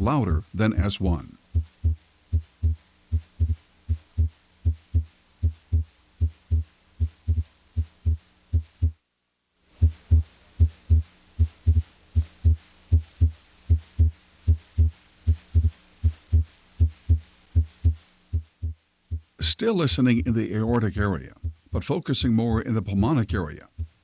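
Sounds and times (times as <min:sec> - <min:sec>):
faint low hum: 0:00.0 - 0:24.0
heartbeat through stethoscope: 0:01.5 - 0:09.0, 0:09.8 - 0:19.4, 0:21.3 - 0:21.7, 0:23.7 - 0:24.0.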